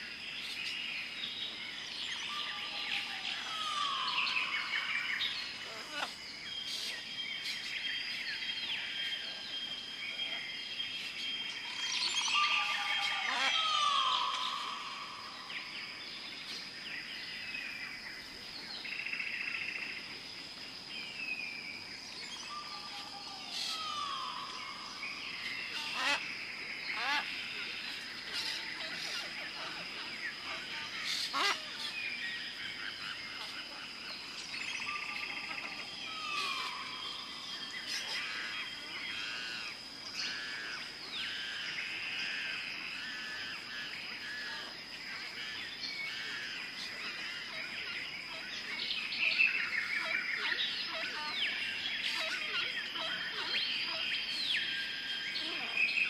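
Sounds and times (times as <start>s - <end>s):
birds calling and chirping: 0.0s - 56.0s
high insect drone: 0.0s - 56.0s.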